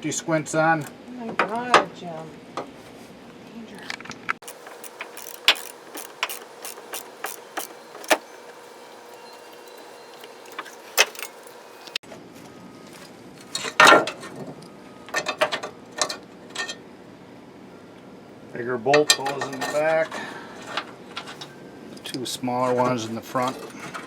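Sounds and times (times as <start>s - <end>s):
wrench clinking on battery hardware: 4.4s - 11.6s.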